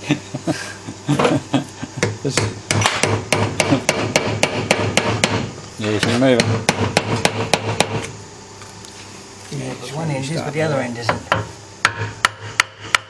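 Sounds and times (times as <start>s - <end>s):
hammer knocking on engine part: 2.0s - 8.0s, 11.1s - 13.0s.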